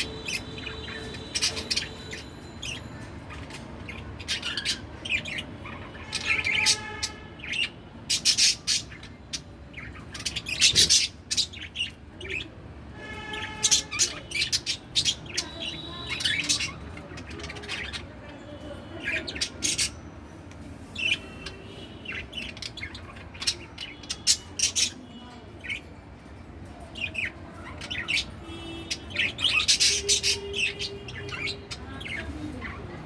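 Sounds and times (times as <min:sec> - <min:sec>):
budgerigar chirping and warbling: 0:00.0 - 0:02.3, 0:09.8 - 0:12.0.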